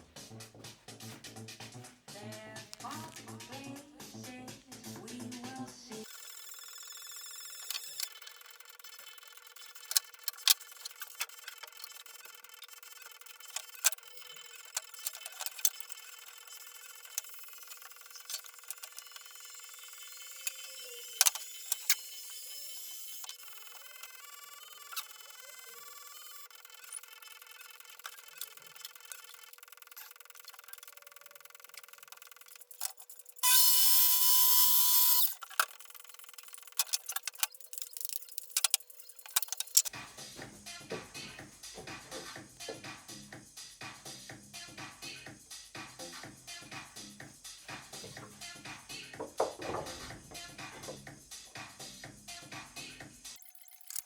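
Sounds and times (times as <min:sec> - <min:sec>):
power tool motor whine: 0:18.8 - 0:27.0, 0:33.4 - 0:35.5
clicks and knocks on wooden panels: 0:49.2 - 0:51.0.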